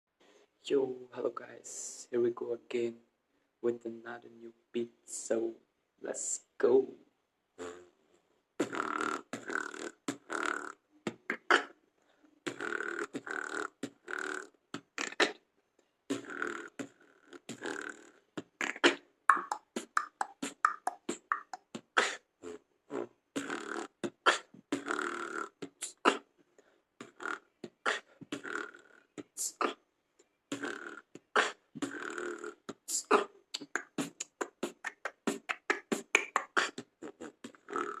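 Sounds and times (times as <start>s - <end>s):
man beatboxing: 7.6s - 7.9s, 8.6s - 11.7s, 12.4s - 15.4s, 16.1s - 26.3s, 27.0s - 29.8s, 30.5s - 38.0s.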